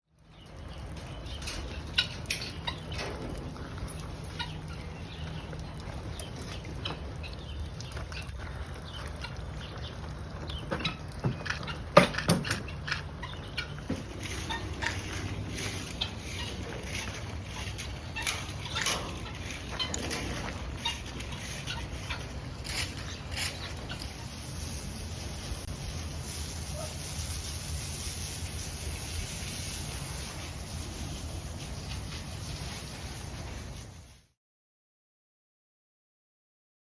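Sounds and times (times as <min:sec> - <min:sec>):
fowl calling: 0:12.9 - 0:24.4.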